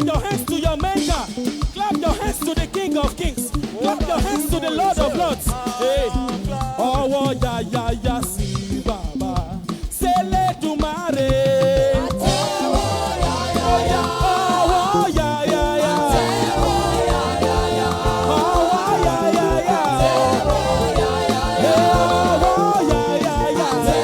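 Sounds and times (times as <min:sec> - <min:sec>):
praise band music with singing: 0:00.0 - 0:24.0.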